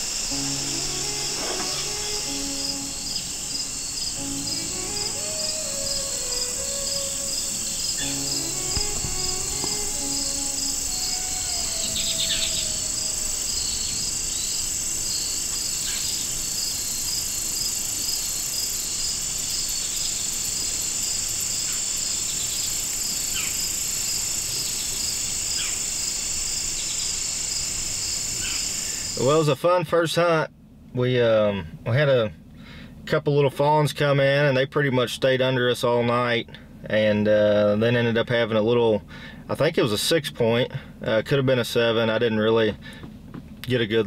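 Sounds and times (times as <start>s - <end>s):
soft background music: 0.0s - 17.0s
descending bird calls: 0.0s - 27.4s
crickets and insects buzzing: 0.0s - 29.4s.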